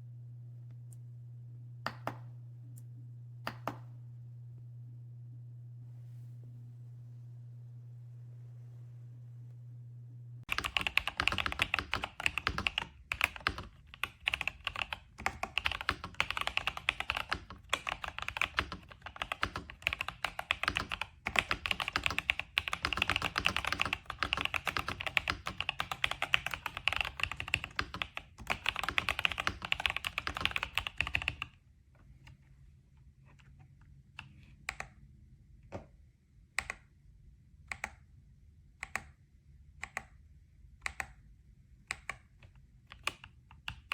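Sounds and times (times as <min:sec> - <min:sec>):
mechanical keyboard typing: 0:10.5 - 0:31.6, 0:40.8 - 0:41.2, 0:41.9 - 0:43.9.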